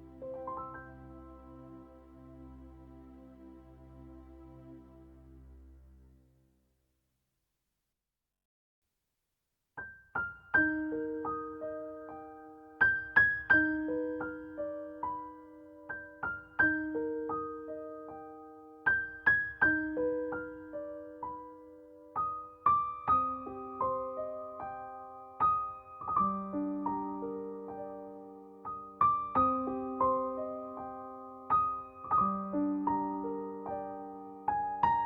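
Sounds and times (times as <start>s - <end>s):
gentle piano notes: 0.0s - 5.6s, 9.8s - 35.0s.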